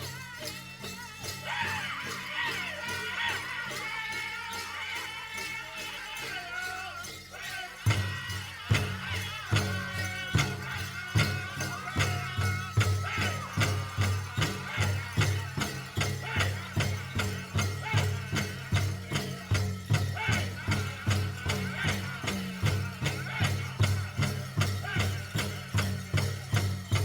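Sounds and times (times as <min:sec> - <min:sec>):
bells jingling: 0:00.0 - 0:27.0
high-pitched group singing: 0:00.0 - 0:27.0
large drum beating: 0:07.8 - 0:27.0.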